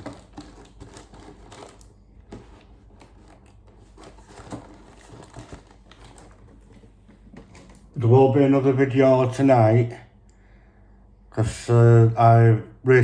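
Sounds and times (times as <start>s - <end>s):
plastic packaging clicks and rustles: 0.0s - 8.0s.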